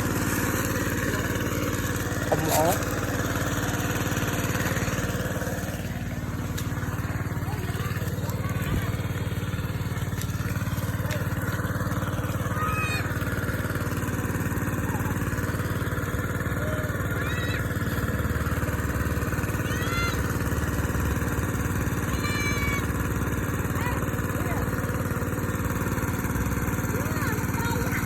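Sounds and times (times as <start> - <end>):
small engine running: 0.0 - 28.0.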